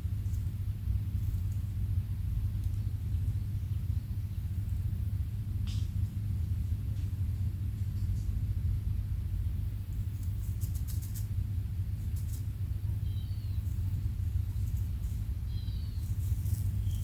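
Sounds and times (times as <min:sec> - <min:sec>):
low rumble: 0:00.0 - 0:17.0
quail chirps: 0:15.5 - 0:17.0.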